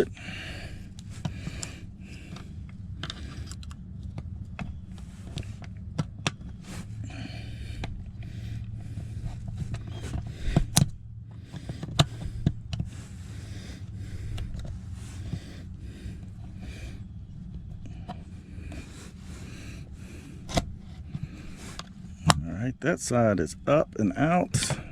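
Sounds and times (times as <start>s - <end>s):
steady low hum: 0.0s - 24.9s
plastic latch clicking and scraping: 20.5s - 22.4s.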